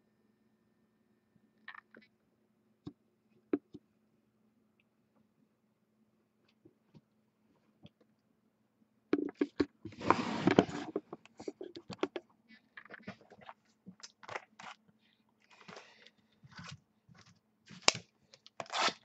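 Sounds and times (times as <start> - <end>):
cardboard box scraping: 10.0 - 11.0.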